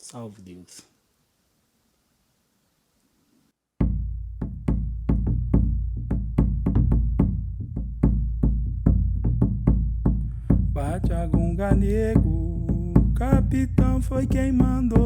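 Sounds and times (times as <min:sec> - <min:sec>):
deep drum beating fast rhythm: 0:03.8 - 0:15.0.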